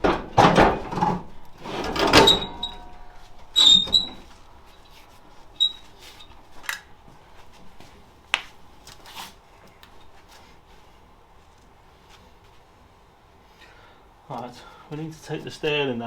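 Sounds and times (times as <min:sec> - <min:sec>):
metal tools clinking: 0:00.4 - 0:04.2.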